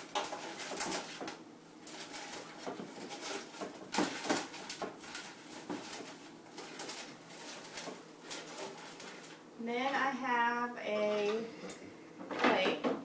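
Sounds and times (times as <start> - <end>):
artificial berries rustling: 0.0 - 10.1.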